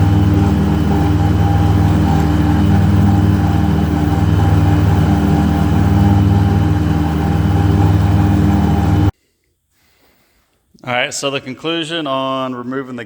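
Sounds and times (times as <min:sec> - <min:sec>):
diesel mower engine running: 0:00.0 - 0:09.1.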